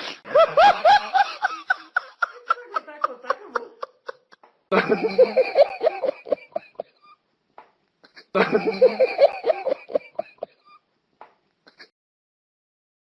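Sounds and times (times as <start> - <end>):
man laughing heartily: 0.2 - 7.2, 8.0 - 10.8.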